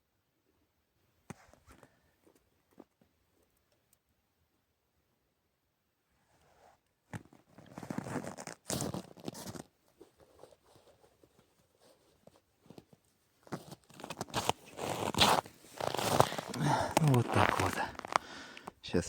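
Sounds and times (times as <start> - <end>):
rustling and crunching: 7.1 - 18.8.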